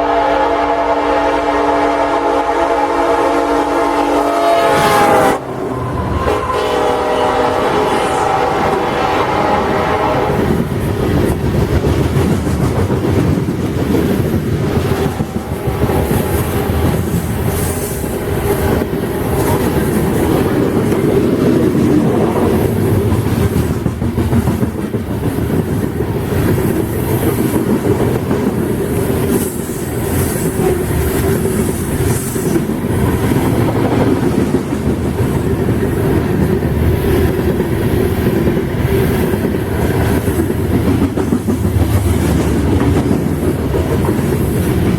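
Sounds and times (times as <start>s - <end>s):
freight train cars rumbling: 0.0s - 44.9s.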